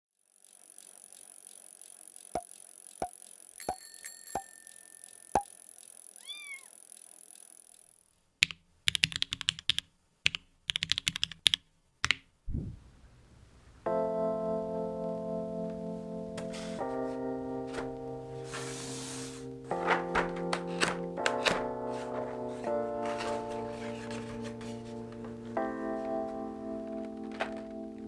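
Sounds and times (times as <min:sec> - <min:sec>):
fast typing on keyboard: 0:08.4 - 0:12.2.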